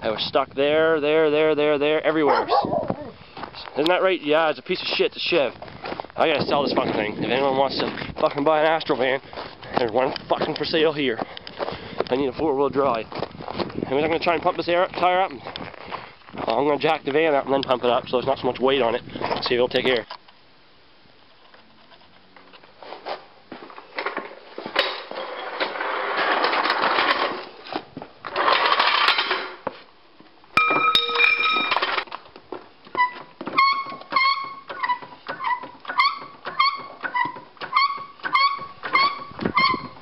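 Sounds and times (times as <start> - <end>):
car jack handle squeaking: 33.0 - 40.0.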